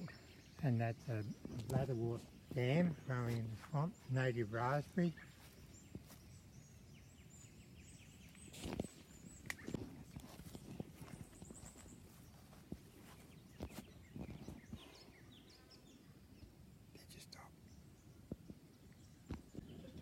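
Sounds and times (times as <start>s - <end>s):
faint outdoor background: 0.0s - 20.0s
footsteps crunching on a track: 8.4s - 15.0s.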